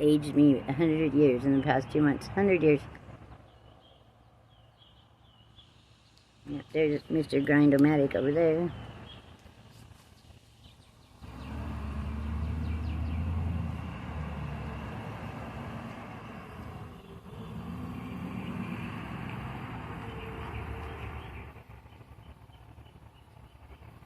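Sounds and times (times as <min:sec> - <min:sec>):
vehicle engine droning: 0:06.5 - 0:24.0.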